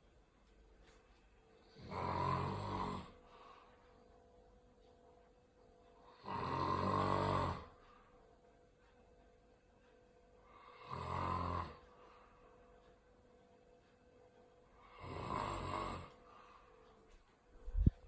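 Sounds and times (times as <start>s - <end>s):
quiet breathing: 0.0s - 18.0s
rasping snores: 1.7s - 3.2s, 6.1s - 7.8s, 10.5s - 11.8s, 14.8s - 16.2s.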